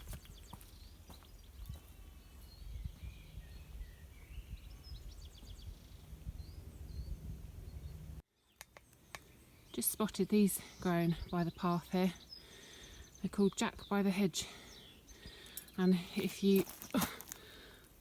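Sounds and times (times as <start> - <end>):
bird chirps and calls: 0.0 - 17.0
steady low rumble: 0.7 - 8.2.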